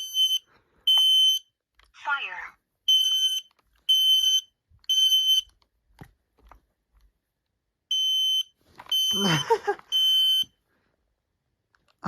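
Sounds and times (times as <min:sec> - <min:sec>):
smoke alarm high-pitched beeps: 0:00.0 - 0:01.6, 0:02.9 - 0:05.5, 0:07.9 - 0:10.6.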